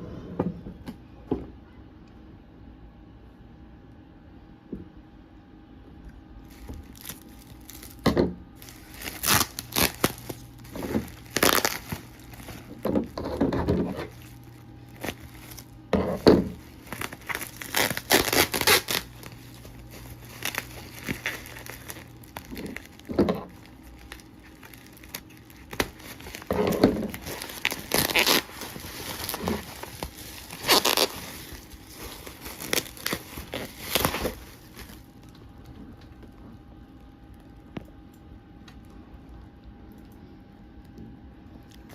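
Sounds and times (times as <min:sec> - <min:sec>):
packaging tearing and crinkling: 0:06.4 - 0:36.4.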